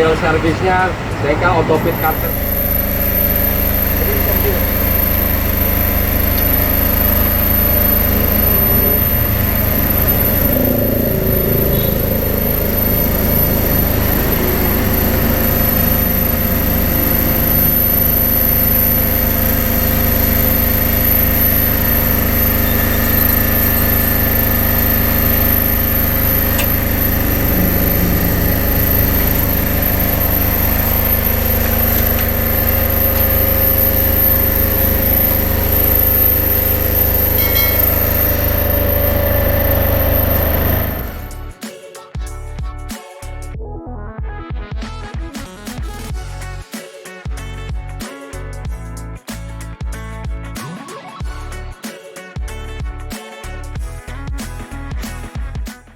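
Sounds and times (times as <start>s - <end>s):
engine idling: 0.0s - 41.6s.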